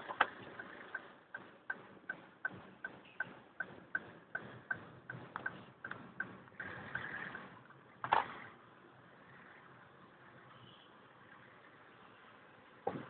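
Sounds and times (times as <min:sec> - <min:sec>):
engine sharp metallic ticking: 0:00.0 - 0:07.7
engine knocks: 0:00.0 - 0:08.5.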